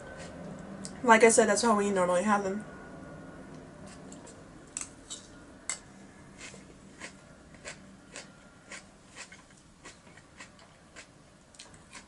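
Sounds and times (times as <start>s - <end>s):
person chewing: 6.4s - 12.0s.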